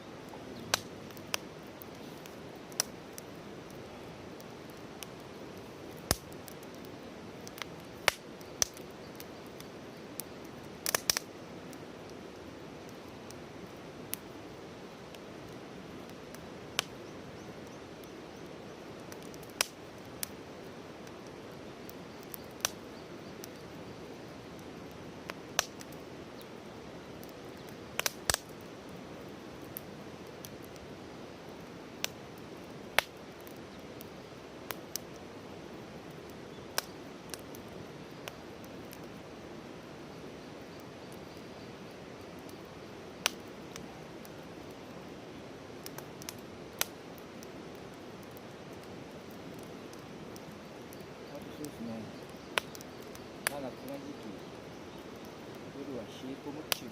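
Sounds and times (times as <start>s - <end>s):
campfire crackling: 0.0s - 56.9s.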